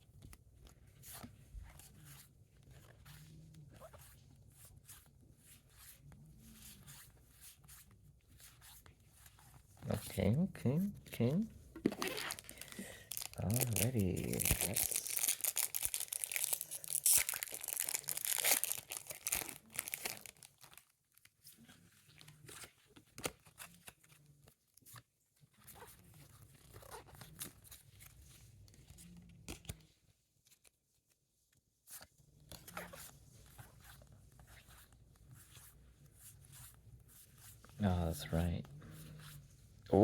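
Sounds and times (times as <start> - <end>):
foil wrapper tearing and crinkling: 12.0 - 20.9.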